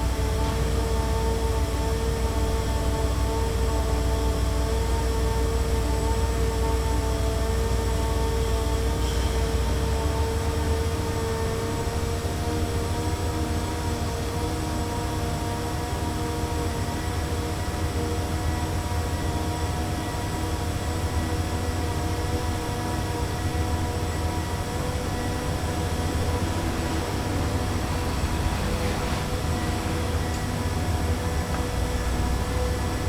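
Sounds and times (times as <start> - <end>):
machinery hum: 0.0 - 33.0
road traffic rumble: 22.3 - 33.0.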